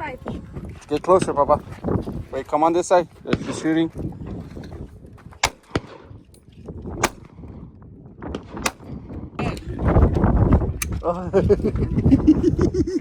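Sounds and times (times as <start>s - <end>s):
air gun shots: 5.4s - 6.1s, 7.0s - 7.3s.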